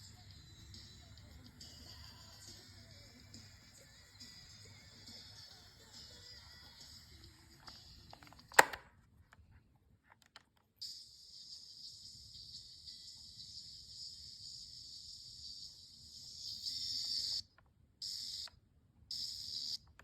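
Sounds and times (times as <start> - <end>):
faint cassette tape playback: 0.0 - 20.0
loud cassette player click: 8.4 - 8.9.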